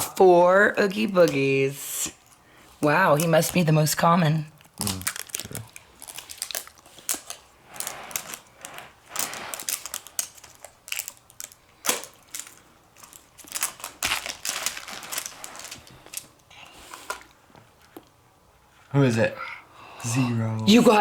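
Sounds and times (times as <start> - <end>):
plastic wrapper crinkling and tearing: 4.6 - 18.1.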